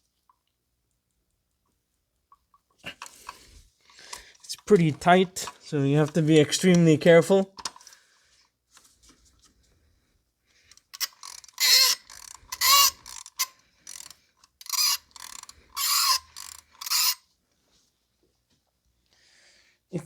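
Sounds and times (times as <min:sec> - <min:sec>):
ratchet clicking: 0:10.7 - 0:17.2.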